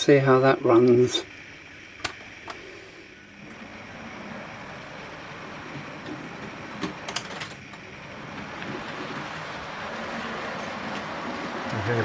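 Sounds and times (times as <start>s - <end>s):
model train rumbling on rails: 3.3s - 12.0s.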